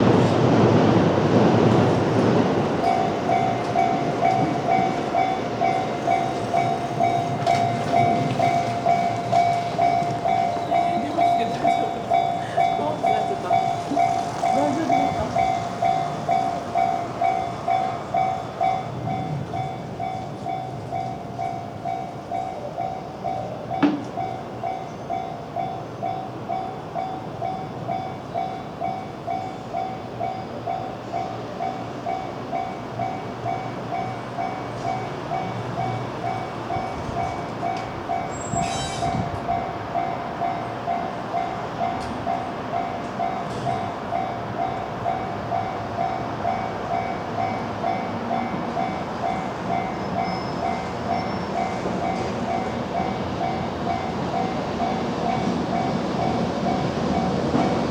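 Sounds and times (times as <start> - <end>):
low train rumble: 0.0 - 57.9
level crossing alarm bell: 2.8 - 57.9
brief high squeal: 38.4 - 39.2.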